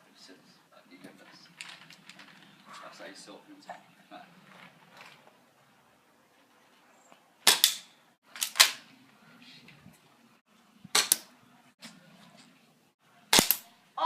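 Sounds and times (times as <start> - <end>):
bb gun snapping pops: 7.5 - 8.8, 10.9 - 11.3, 13.3 - 13.7.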